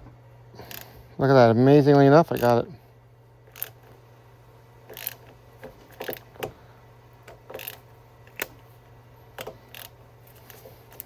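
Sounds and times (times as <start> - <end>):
ratchet wrench clicking: 0.6 - 0.9, 2.3 - 2.6, 3.5 - 4.0, 4.9 - 11.0.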